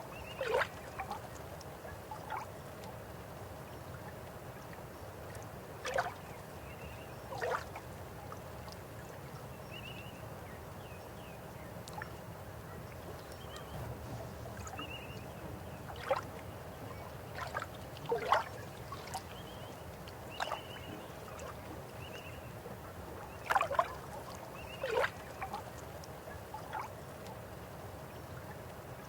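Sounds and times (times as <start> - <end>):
gurgling plops: 17.4 - 19.2.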